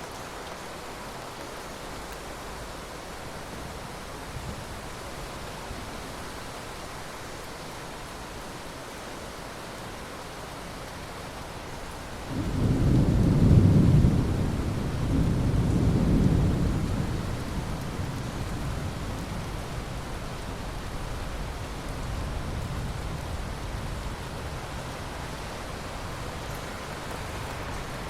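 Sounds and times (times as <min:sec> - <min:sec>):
steady rain: 0:00.0 - 0:28.0
thunder rumbling: 0:12.3 - 0:20.0.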